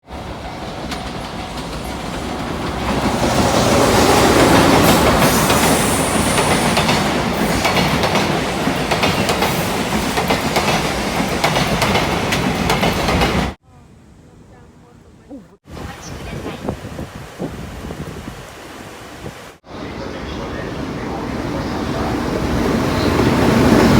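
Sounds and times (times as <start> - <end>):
freight train wheels clattering: 0.2 - 13.6.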